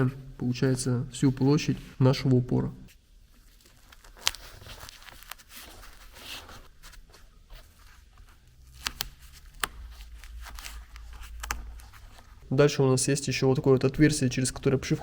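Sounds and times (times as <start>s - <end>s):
soft rustling: 0.0s - 15.0s
sharp plastic clicks: 8.8s - 12.0s.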